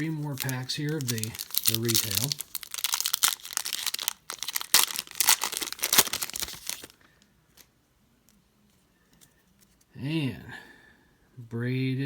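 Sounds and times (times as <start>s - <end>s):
card pack wrapper tearing and crinkling: 0.0s - 7.1s.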